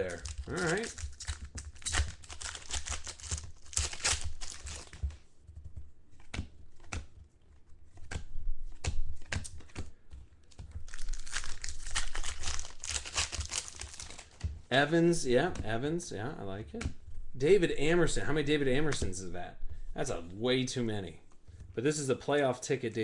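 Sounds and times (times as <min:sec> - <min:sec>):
card pack wrappers crinkling: 0:00.0 - 0:05.2, 0:09.2 - 0:14.4.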